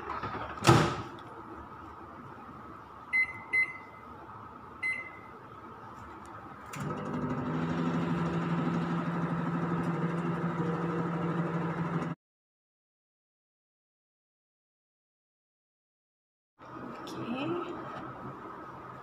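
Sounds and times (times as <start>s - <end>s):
microwave oven humming: 3.0s - 12.2s
microwave keypad beeping: 3.1s - 4.0s, 4.8s - 5.3s.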